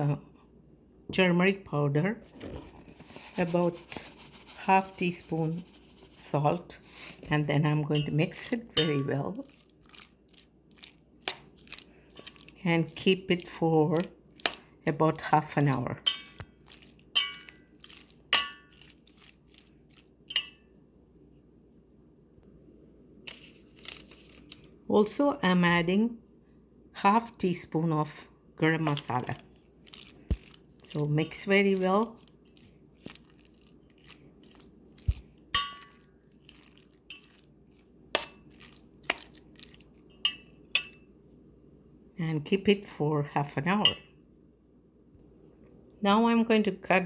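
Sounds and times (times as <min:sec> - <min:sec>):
wet crunching and squelching: 0:06.8 - 0:20.4, 0:28.8 - 0:40.4
spoon clinking against bowl: 0:07.9 - 0:09.1, 0:16.0 - 0:17.8, 0:18.4 - 0:18.9, 0:20.3 - 0:20.7, 0:35.6 - 0:36.1, 0:40.1 - 0:41.1.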